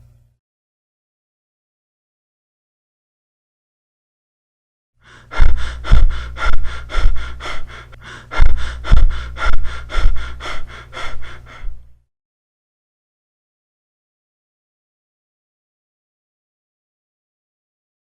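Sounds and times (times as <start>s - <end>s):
steady low drone: 5.1s - 11.9s.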